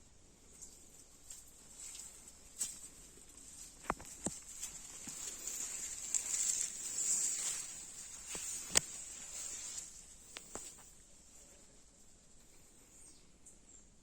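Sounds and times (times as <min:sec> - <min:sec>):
insects buzzing: 0:03.8 - 0:11.6.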